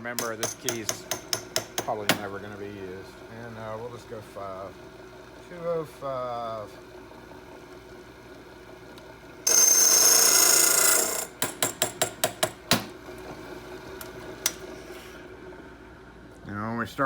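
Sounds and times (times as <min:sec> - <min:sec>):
key cutter cutting brass: 0:00.0 - 0:02.2.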